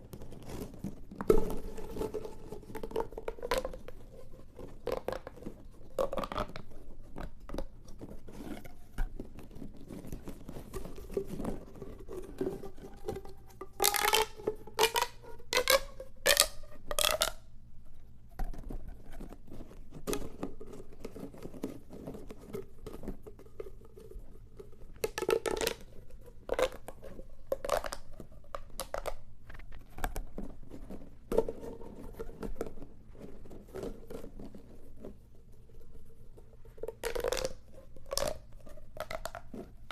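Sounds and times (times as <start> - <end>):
plastic pop tubes clicking: 13.6 - 17.5, 25.0 - 29.2, 36.8 - 39.6.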